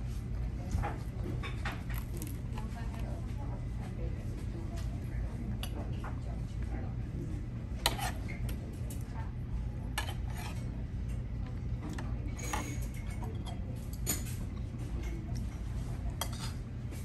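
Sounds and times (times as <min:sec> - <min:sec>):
low hum of room noise: 0:00.0 - 0:17.0
cutlery and dishes clinking: 0:12.3 - 0:15.2, 0:16.2 - 0:16.6.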